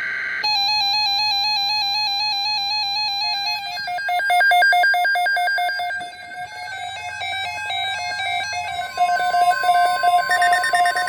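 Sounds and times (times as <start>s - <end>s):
fast pulsing warble: 4.1s - 11.0s.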